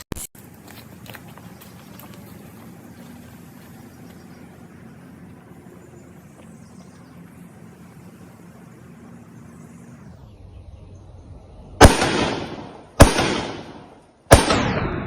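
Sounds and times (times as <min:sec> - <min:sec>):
faint steady hum: 0:00.4 - 0:15.0
gunshots with echo: 0:11.8 - 0:15.0.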